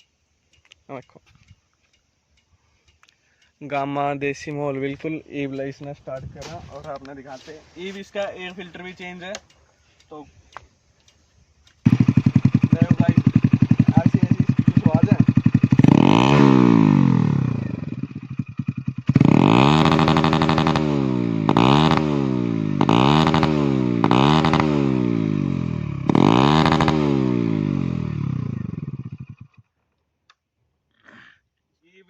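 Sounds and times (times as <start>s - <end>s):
motorcycle engine revving: 11.8s - 29.7s.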